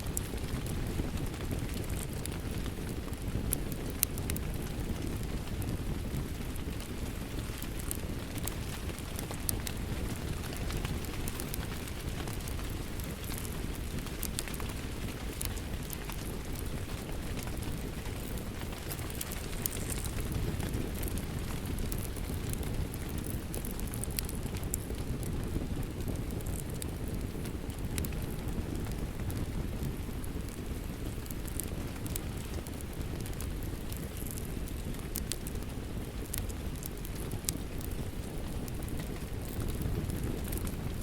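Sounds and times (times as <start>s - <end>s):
steady rain: 0.0s - 41.0s
wood fire crackling: 0.0s - 41.0s.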